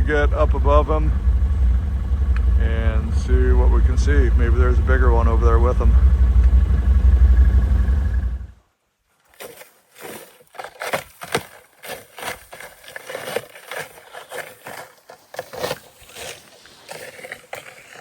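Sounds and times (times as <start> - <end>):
footsteps through brush: 9.0 - 18.0.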